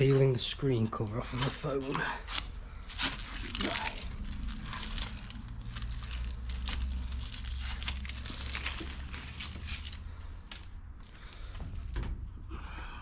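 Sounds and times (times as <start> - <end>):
plastic film peeling off: 1.2 - 10.7.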